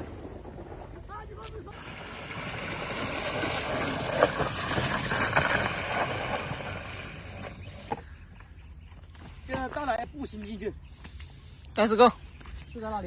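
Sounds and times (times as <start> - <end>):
vehicle on rough dirt track: 0.0 - 10.8.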